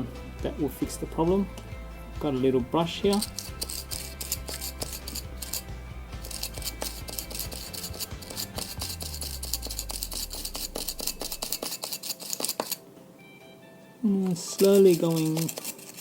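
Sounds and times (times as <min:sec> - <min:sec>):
low background music: 0:00.0 - 0:16.0
brush scrubbing metal: 0:03.1 - 0:12.8, 0:14.4 - 0:16.0.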